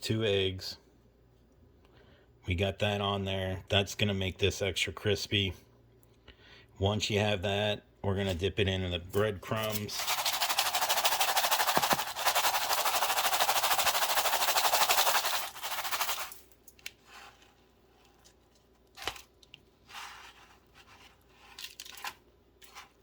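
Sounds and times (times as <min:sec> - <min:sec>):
breadcrumbs crackling rustle: 0:09.8 - 0:23.0
soft scrapes: 0:17.0 - 0:18.5, 0:19.8 - 0:21.7.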